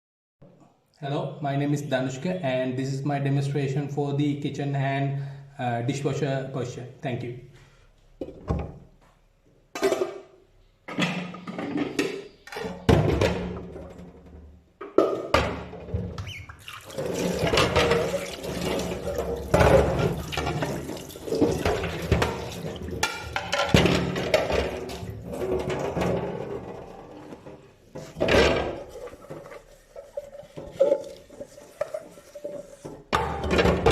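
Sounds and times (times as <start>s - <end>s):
dishes knocking and clattering: 9.7s - 10.3s, 10.9s - 16.2s, 17.0s - 33.9s
water running into sink: 16.4s - 26.0s, 28.0s - 32.9s.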